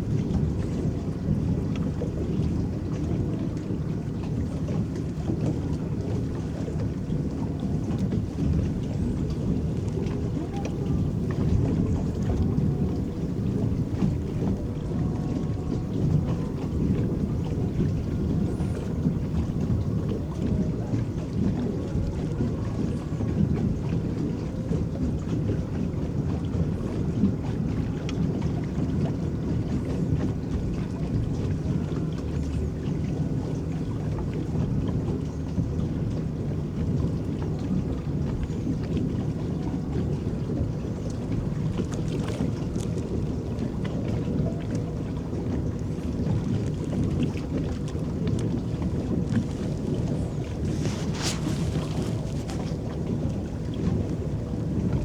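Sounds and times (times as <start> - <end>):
water churning around boat: 0.0 - 55.0.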